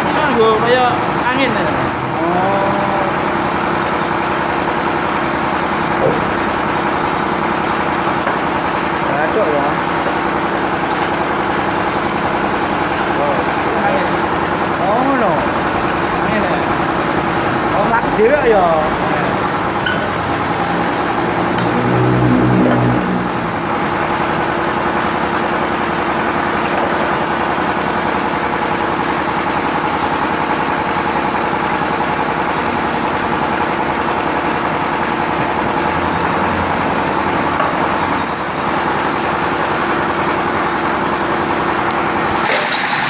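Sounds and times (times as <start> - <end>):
machine mechanical drone: 0.0 - 43.0.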